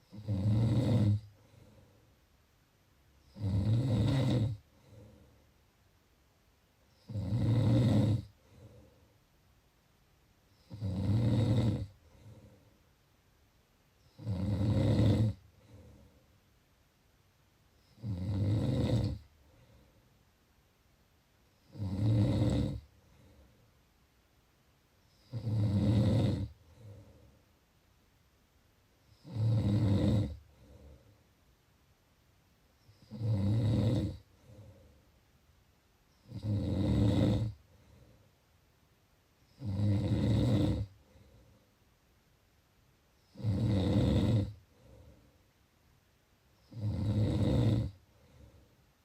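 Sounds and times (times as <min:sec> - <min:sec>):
loud snores: 0:00.0 - 0:01.3, 0:03.3 - 0:05.1, 0:07.0 - 0:08.4, 0:10.6 - 0:12.5, 0:14.1 - 0:16.0, 0:17.9 - 0:19.3, 0:21.6 - 0:22.9, 0:25.1 - 0:27.0, 0:29.1 - 0:30.8, 0:32.9 - 0:34.6, 0:36.2 - 0:37.6, 0:39.5 - 0:41.0, 0:43.3 - 0:44.6, 0:46.6 - 0:48.0
soft breath: 0:01.2 - 0:02.4, 0:04.6 - 0:05.7, 0:08.3 - 0:09.3, 0:11.9 - 0:13.0, 0:15.4 - 0:16.5, 0:19.3 - 0:20.3, 0:22.8 - 0:23.9, 0:26.5 - 0:27.6, 0:30.4 - 0:31.4, 0:34.2 - 0:35.2, 0:37.5 - 0:38.6, 0:40.9 - 0:41.9, 0:44.6 - 0:45.6, 0:47.9 - 0:49.0.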